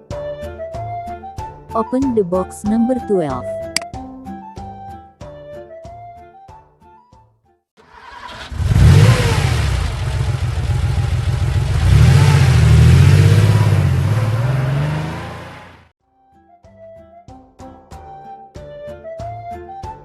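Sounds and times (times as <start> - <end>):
engine revving: 7.8 - 15.9.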